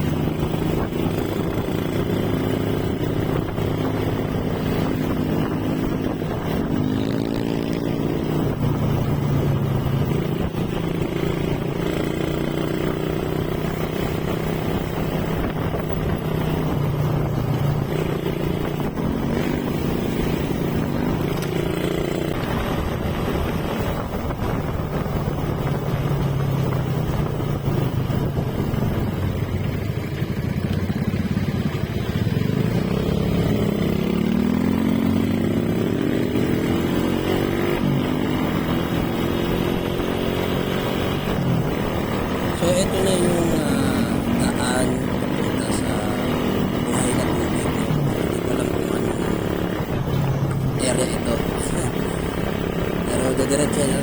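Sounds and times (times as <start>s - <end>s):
motorcycle engine running: 0.0s - 54.0s
wind and road noise: 0.0s - 54.0s.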